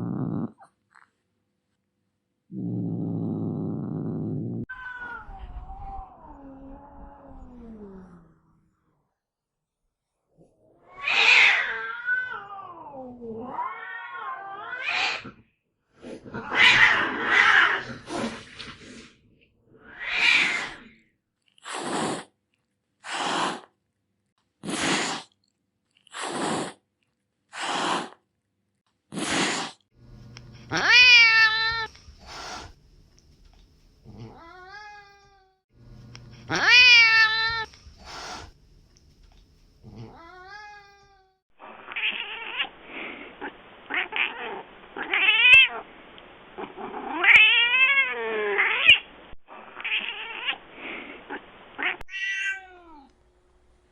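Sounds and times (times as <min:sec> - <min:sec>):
cat meowing and yowling: 0:04.7 - 0:08.0, 0:10.8 - 0:15.3, 0:30.7 - 0:31.9, 0:34.3 - 0:35.6, 0:36.5 - 0:37.7, 0:40.0 - 0:42.7, 0:47.1 - 0:49.0, 0:51.8 - 0:53.1
cats caterwauling: 0:04.7 - 0:08.4, 0:10.6 - 0:15.4, 0:16.2 - 0:18.0, 0:19.7 - 0:20.9, 0:30.7 - 0:32.0, 0:36.5 - 0:37.8, 0:39.9 - 0:42.7, 0:43.4 - 0:45.8, 0:46.7 - 0:49.0, 0:51.8 - 0:53.1
cat hissing: 0:13.5 - 0:15.4, 0:19.8 - 0:21.0, 0:21.6 - 0:22.4, 0:23.0 - 0:23.8, 0:24.6 - 0:25.4, 0:26.0 - 0:26.8, 0:27.5 - 0:28.2, 0:29.1 - 0:29.9, 0:30.6 - 0:32.8, 0:36.4 - 0:38.6.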